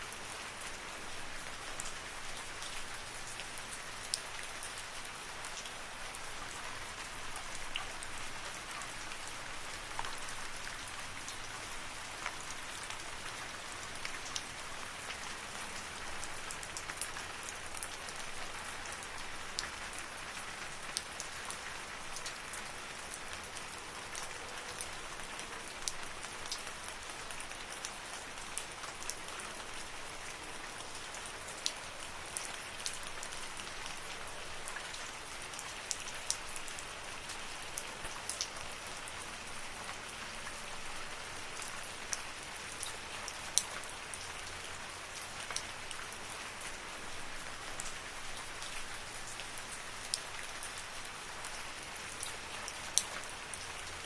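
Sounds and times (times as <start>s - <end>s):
steady rain hiss: 0.0s - 54.0s.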